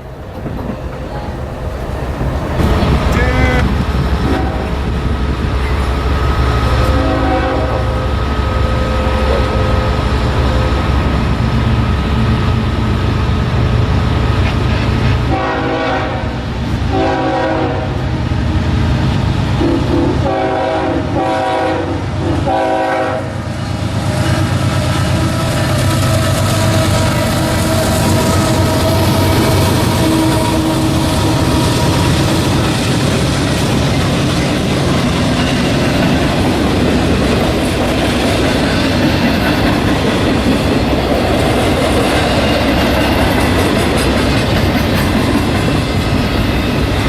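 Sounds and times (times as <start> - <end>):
diesel locomotive rumbling: 0.0 - 47.0
locomotive air horn blasts: 3.1 - 4.8, 6.7 - 10.0, 15.3 - 18.0, 19.6 - 23.4, 25.2 - 32.0.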